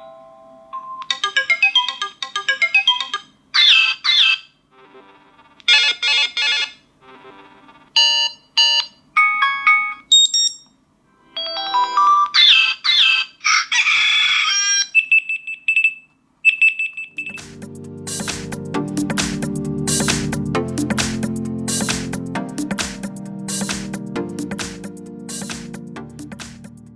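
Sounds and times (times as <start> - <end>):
phone ringtone melodies: 0.0 - 3.3, 5.8 - 10.6, 11.3 - 12.8, 17.1 - 18.3
electronic music track: 17.1 - 26.9.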